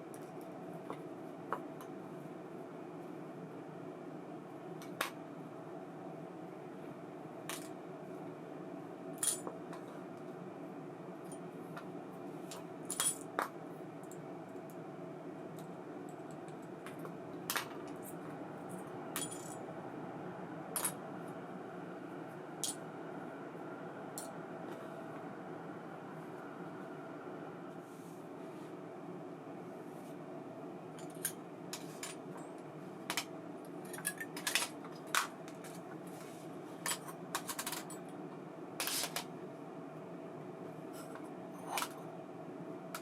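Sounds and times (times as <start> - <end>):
steady low hum: 0.0 - 43.0
small metal parts clinking: 19.2 - 19.6.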